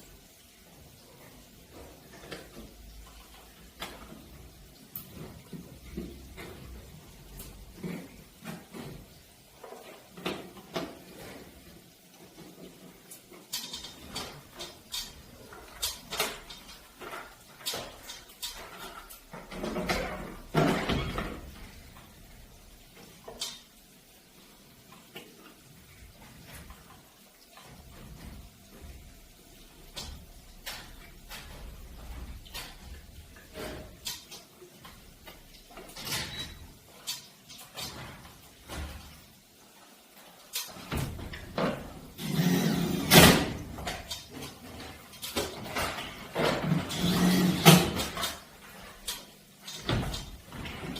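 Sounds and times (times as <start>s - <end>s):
clicks and knocks of hard parts: 12.3s - 22.1s, 29.8s - 39.3s, 40.4s - 50.9s.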